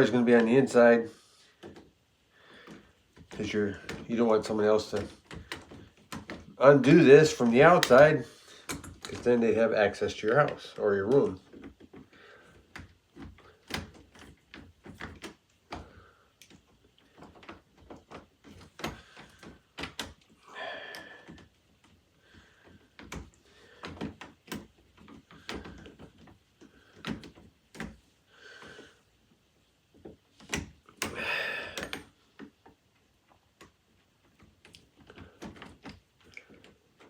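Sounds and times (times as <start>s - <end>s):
metal doorknob clicks and knocks: 12.7s - 15.8s, 16.4s - 20.3s, 23.0s - 28.0s.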